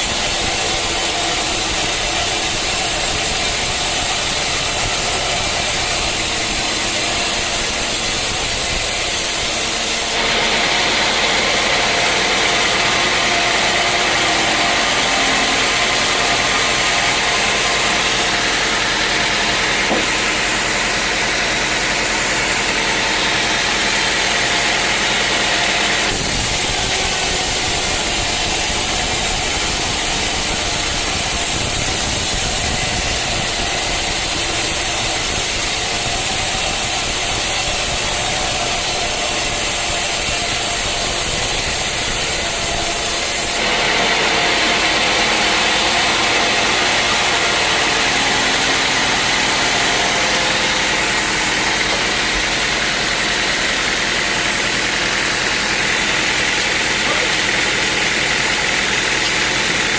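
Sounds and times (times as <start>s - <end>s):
saw blade cutting through log: 0.0s - 59.9s
sawmill saw running: 0.0s - 59.9s.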